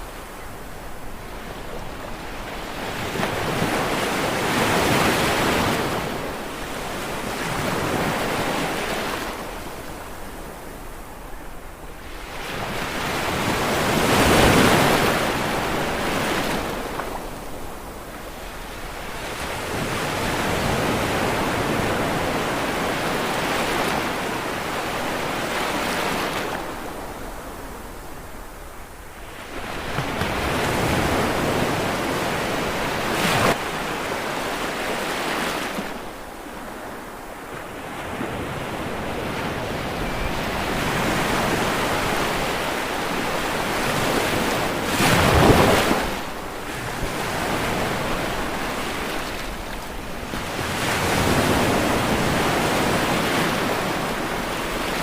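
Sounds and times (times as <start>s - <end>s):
ocean waves breaking: 29.3s - 55.0s.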